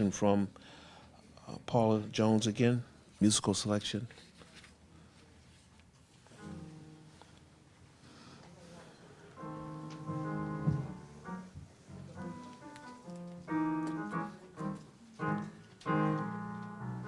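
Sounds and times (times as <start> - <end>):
piano playing slow chords: 6.4 - 7.4, 9.3 - 17.0.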